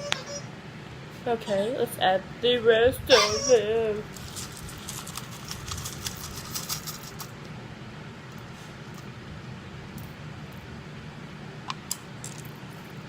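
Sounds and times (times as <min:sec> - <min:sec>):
plastic googly eyes rattling: 0:04.2 - 0:07.3.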